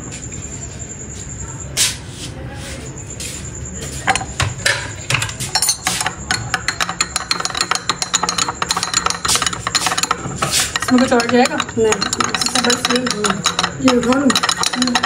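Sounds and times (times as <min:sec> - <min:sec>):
spoon clinking against dish: 0:04.1 - 0:15.0.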